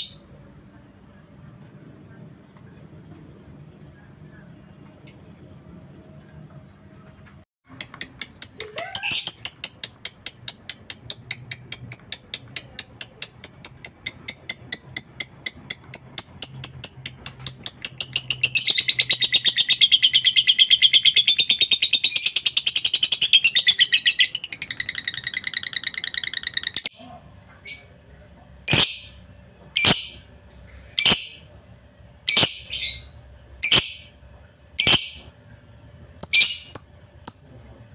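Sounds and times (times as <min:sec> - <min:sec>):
lovebird chattering trill: 0:07.7 - 0:26.9, 0:29.8 - 0:30.2, 0:31.0 - 0:31.5, 0:32.3 - 0:34.1, 0:34.8 - 0:35.3, 0:36.2 - 0:37.8.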